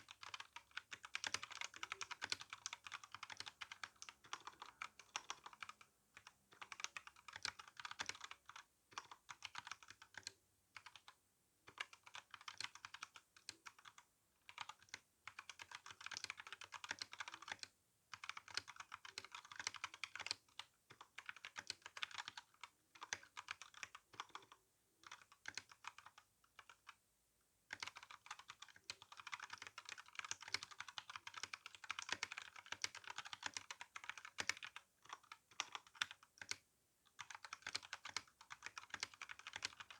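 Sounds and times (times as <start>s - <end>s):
mechanical keyboard typing: 0.0s - 27.0s, 27.7s - 36.6s, 37.2s - 39.9s.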